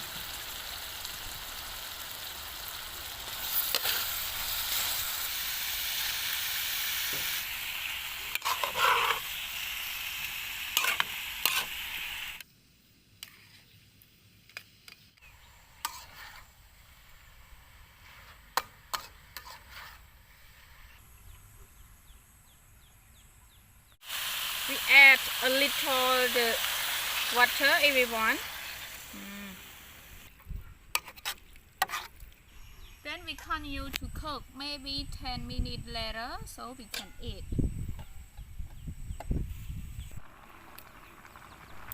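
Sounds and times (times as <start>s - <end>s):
food sizzling in hot oil: 0.0s - 12.5s, 15.2s - 20.8s, 24.0s - 31.1s, 32.7s - 41.9s
utensil scraping a pan: 8.3s - 9.3s, 10.8s - 11.8s, 15.8s - 16.6s, 18.0s - 21.0s, 30.9s - 32.2s.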